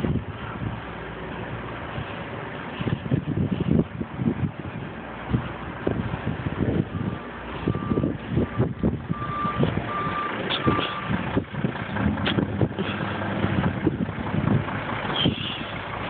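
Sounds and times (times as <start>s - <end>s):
low engine hum: 0.0s - 16.0s
truck reversing beeper: 6.7s - 11.2s.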